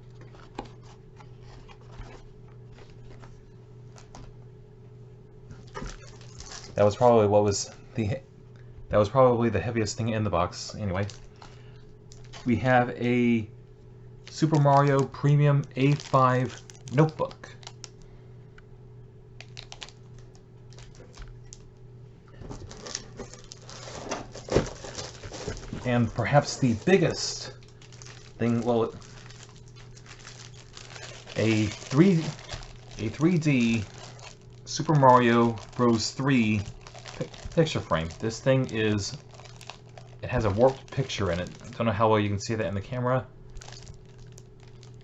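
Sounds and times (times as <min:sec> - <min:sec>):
packaging rustling: 0:00.0 - 0:04.3, 0:05.5 - 0:06.9, 0:10.6 - 0:12.8, 0:14.2 - 0:18.1, 0:19.4 - 0:21.7, 0:22.3 - 0:42.0, 0:43.5 - 0:45.0
steady low hum: 0:00.0 - 0:45.0.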